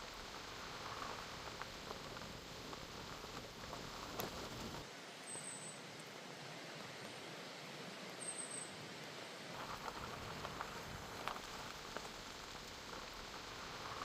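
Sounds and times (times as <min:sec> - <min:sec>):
light patter: 0:00.0 - 0:04.9, 0:09.6 - 0:14.0
running water hiss: 0:00.0 - 0:14.0
small ticks: 0:09.6 - 0:14.0.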